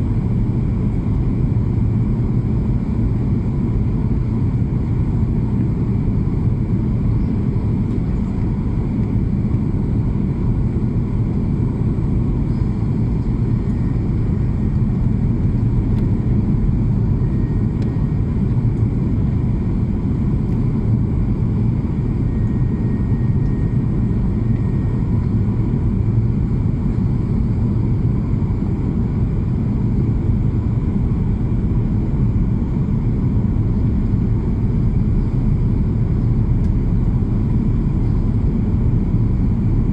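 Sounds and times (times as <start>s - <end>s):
airplane cabin rumble: 0.0s - 39.9s.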